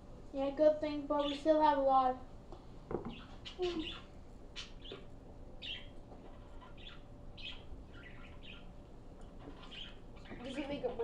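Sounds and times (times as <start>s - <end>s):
small bird chirping: 3.1s - 8.8s, 9.4s - 11.0s.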